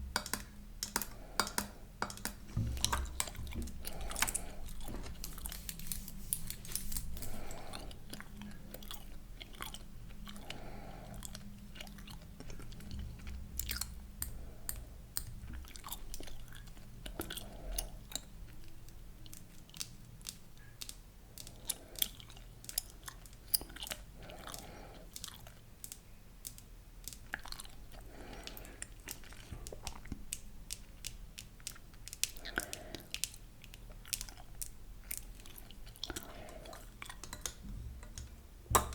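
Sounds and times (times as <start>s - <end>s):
chewing gum with mouth clicks: 0.2s - 37.6s.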